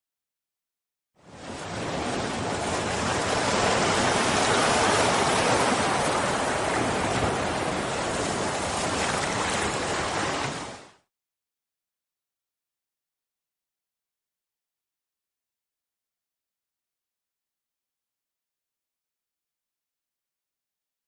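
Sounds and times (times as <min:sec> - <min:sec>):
water rushing: 0:01.3 - 0:11.1.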